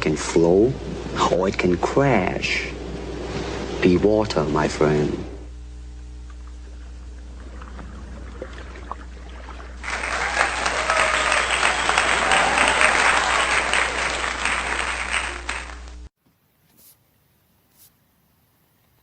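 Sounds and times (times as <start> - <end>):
low steady hum: 0.0 - 19.0
audience applauding: 9.8 - 16.1.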